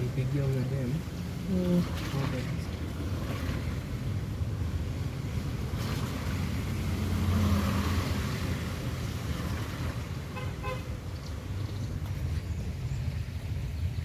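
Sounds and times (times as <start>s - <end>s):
car engine and road noise: 0.0s - 14.0s.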